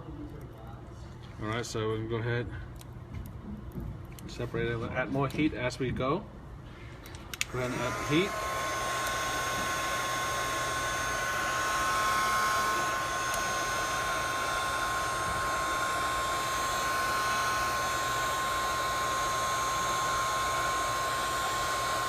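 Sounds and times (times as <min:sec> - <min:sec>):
heat gun blowing with whine: 0:06.9 - 0:22.0.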